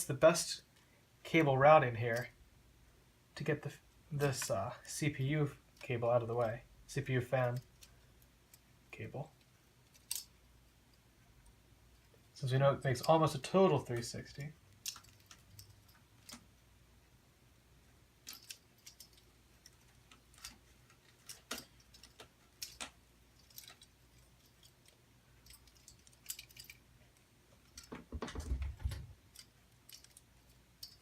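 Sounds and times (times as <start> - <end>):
bump and rustle: 27.8 - 29.2.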